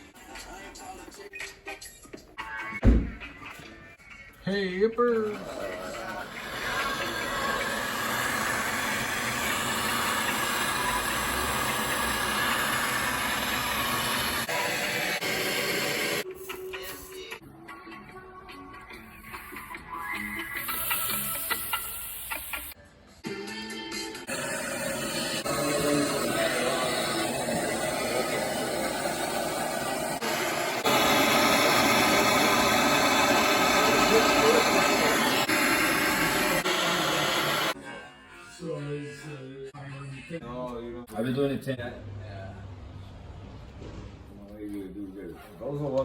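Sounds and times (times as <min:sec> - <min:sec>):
water rushing through pipes: 0:06.2 - 0:16.2
water pump rushing hiss: 0:06.2 - 0:16.3, 0:24.3 - 0:37.8.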